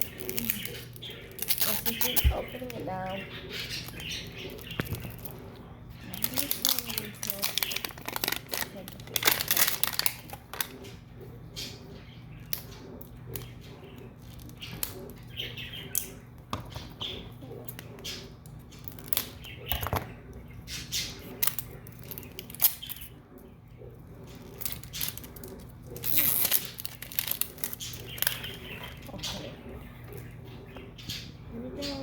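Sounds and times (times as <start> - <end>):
plastic packaging clicks: 0.0 - 2.9, 3.8 - 5.4, 6.1 - 10.8, 21.3 - 23.1, 24.4 - 29.1
plastic crinkling rustles: 0.0 - 11.0, 24.3 - 29.4
steady low hum: 0.0 - 32.0.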